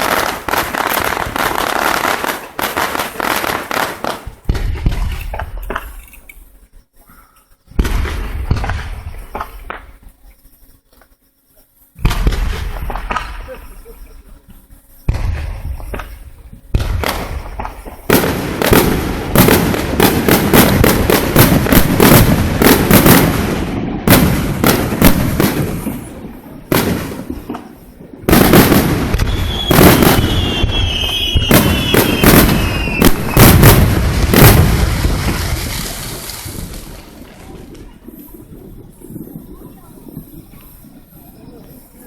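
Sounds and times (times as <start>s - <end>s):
fireworks cracks and booms: 0.0s - 6.0s, 7.7s - 10.2s, 12.0s - 14.2s, 15.0s - 40.8s
falling firework whistle: 28.4s - 37.0s.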